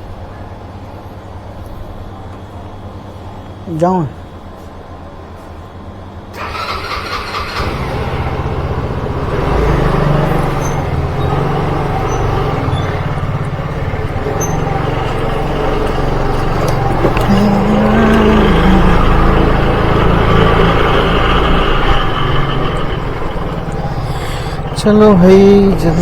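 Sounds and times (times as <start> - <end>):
motorcycle engine starting: 6.3 - 26.0
motorcycle engine running: 7.3 - 26.0.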